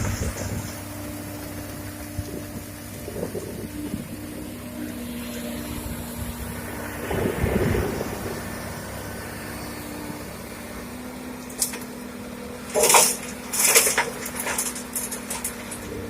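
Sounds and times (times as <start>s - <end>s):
diesel engine humming: 0.0s - 16.0s
stones clattering against steel: 12.6s - 16.0s.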